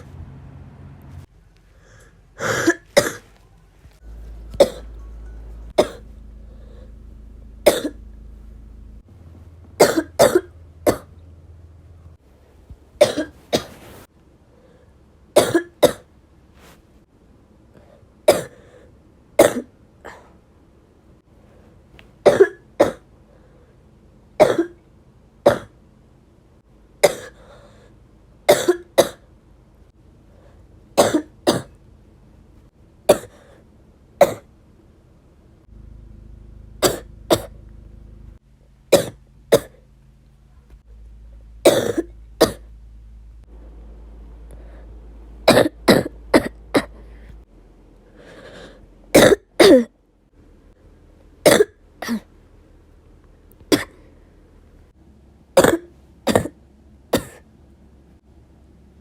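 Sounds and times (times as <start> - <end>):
person coughing: 2.4 - 3.3, 4.6 - 4.9, 5.8 - 6.1, 7.6 - 8.0, 9.8 - 11.1, 13.0 - 13.8, 22.2 - 23.0, 27.0 - 27.4, 31.0 - 31.8, 33.1 - 33.5, 41.7 - 42.7, 45.5 - 47.1, 48.6 - 49.9, 51.4 - 52.3, 53.7 - 54.1, 55.6 - 57.4.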